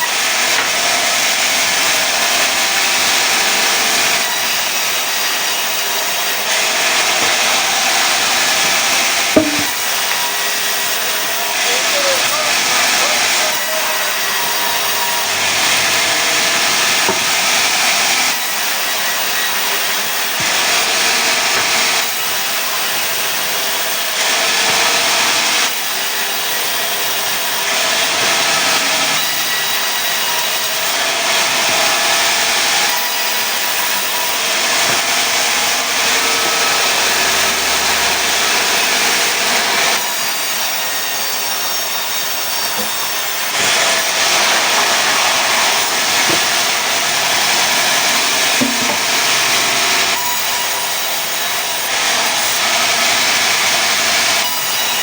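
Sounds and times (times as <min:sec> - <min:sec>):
sawmill saw cutting wood: 0:00.0 - 0:55.0.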